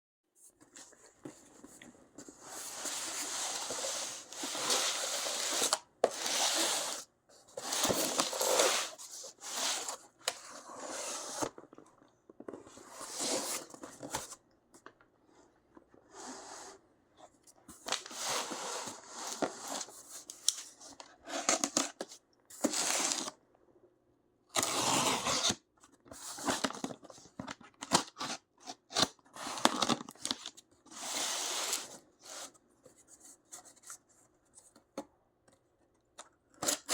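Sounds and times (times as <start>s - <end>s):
cardboard being cut and torn: 24.6s - 25.6s.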